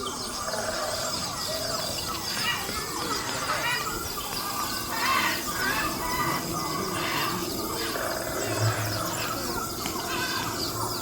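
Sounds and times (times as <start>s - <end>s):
bird-like chirps: 0.0s - 11.0s.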